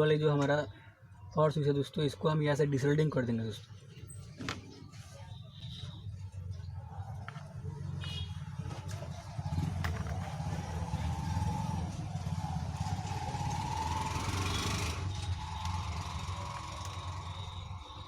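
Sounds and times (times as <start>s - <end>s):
motor running with whine: 8.0s - 18.0s.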